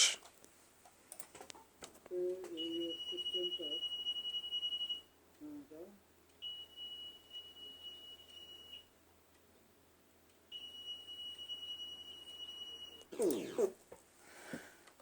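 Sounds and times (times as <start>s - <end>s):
high-pitched alarm beep: 2.5s - 5.1s, 6.4s - 8.9s, 10.5s - 13.7s.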